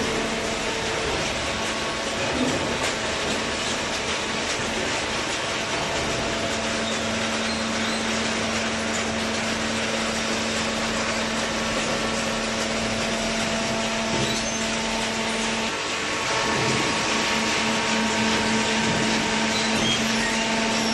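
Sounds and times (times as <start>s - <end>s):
baler machine running: 0.0s - 20.9s.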